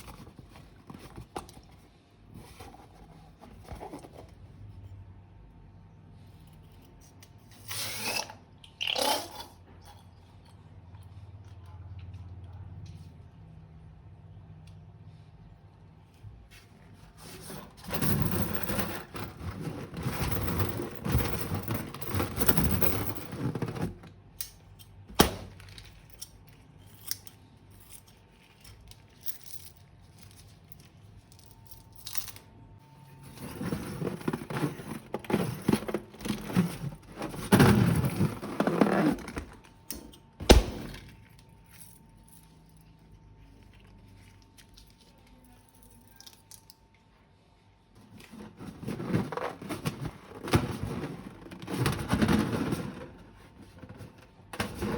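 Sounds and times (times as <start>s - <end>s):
crinkling and rattling materials: 17.2s - 24.2s, 33.2s - 39.7s, 48.2s - 54.9s.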